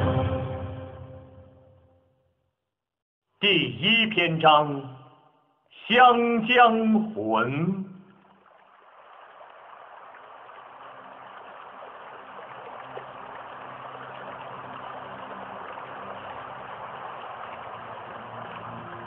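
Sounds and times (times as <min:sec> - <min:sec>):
rushing water: 0:05.8 - 0:19.0.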